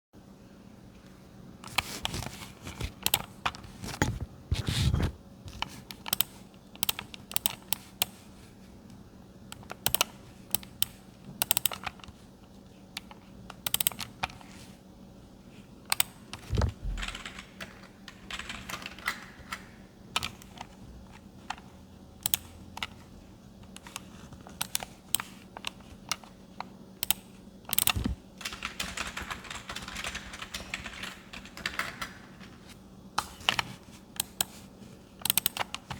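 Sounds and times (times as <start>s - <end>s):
faint steady hum: 0.2s - 35.9s
typing on computer keyboard: 5.6s - 7.9s, 9.6s - 12.1s, 13.0s - 14.5s, 15.9s - 23.0s, 27.0s - 32.7s, 35.2s - 35.9s.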